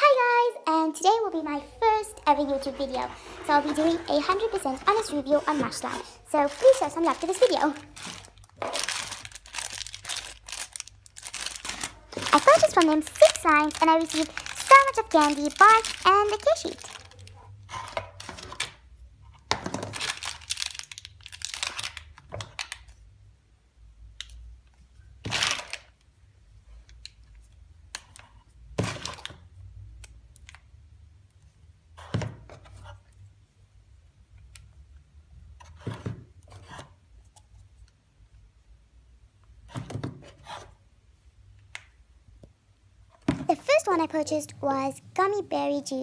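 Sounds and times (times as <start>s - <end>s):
plastic packaging crinkling: 2.5s - 17.4s, 19.8s - 22.9s.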